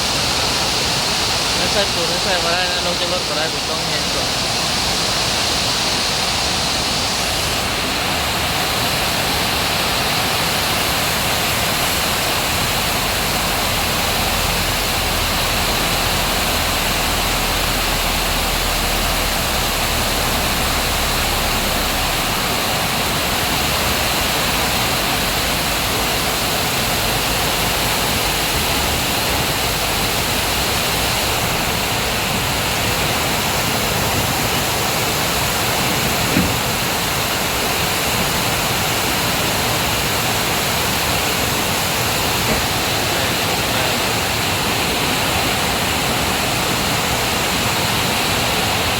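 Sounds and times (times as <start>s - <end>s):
heavy rain pouring: 0.0s - 48.9s.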